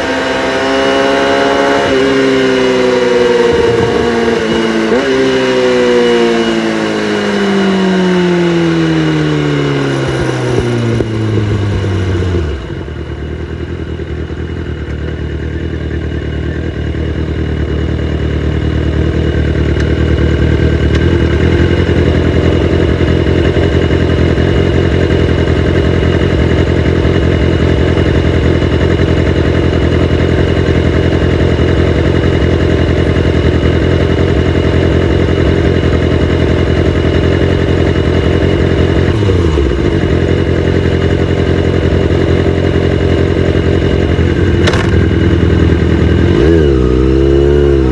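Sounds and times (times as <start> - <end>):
motorcycle engine revving and idling: 0.0 - 47.9.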